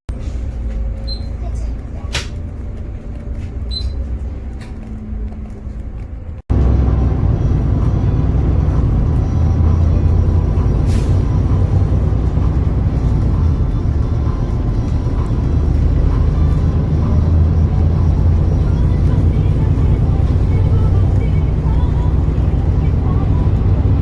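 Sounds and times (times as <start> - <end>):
bus engine and road rumble: 0.1 - 24.0.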